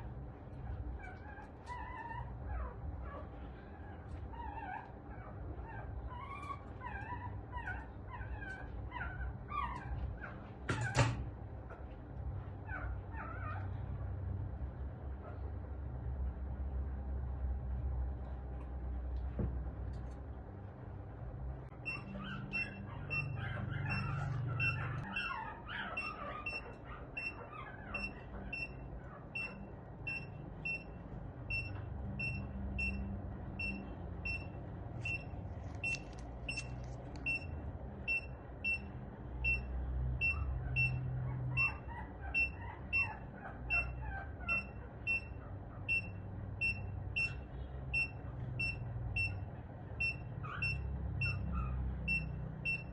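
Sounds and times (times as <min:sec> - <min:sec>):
animal whining: 0:00.6 - 0:10.6, 0:12.6 - 0:14.2, 0:21.7 - 0:38.8, 0:40.2 - 0:49.4, 0:50.0 - 0:52.9
patient monitor pulse beep: 0:21.8 - 0:25.2, 0:26.0 - 0:27.4, 0:28.0 - 0:28.8, 0:29.4 - 0:41.7, 0:44.5 - 0:52.9.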